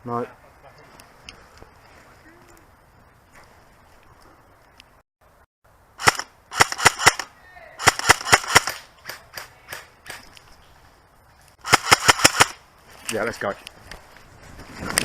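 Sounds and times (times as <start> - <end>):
airsoft guns firing: 6.0 - 10.2, 11.6 - 12.6.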